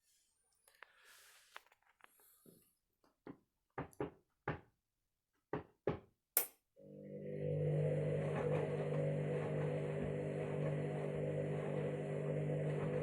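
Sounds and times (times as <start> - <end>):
drum motor humming: 6.9 - 13.0.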